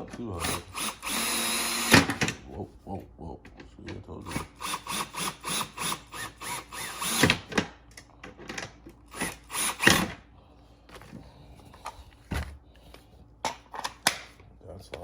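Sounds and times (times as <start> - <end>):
power drill bursts: 0.4 - 2.3, 4.3 - 7.6, 9.1 - 10.2.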